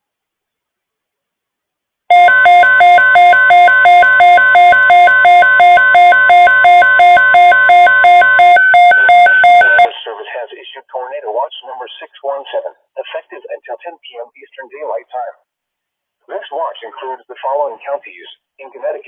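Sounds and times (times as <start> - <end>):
steady warning alarm tone: 2.1 - 9.9
two-pitch electronic beeping: 2.1 - 9.9.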